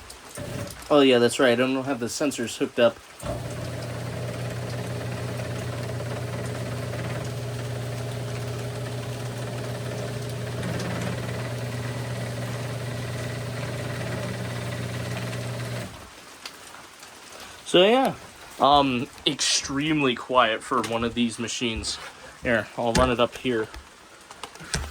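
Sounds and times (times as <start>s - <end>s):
garage door opener motor humming: 0.2s - 0.8s, 3.2s - 16.1s.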